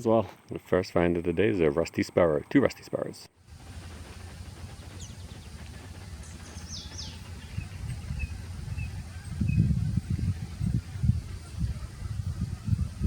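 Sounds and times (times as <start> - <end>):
small birds calling: 3.4 - 13.0
steady low rumble: 3.4 - 13.0.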